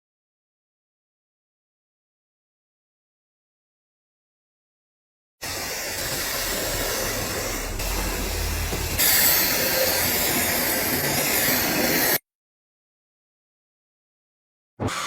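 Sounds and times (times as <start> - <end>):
compressed air hissing: 5.4 - 12.2.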